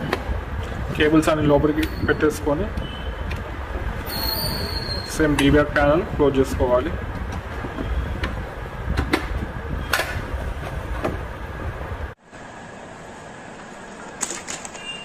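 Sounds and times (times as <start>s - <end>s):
low rumbling handling noise: 0.0s - 12.2s.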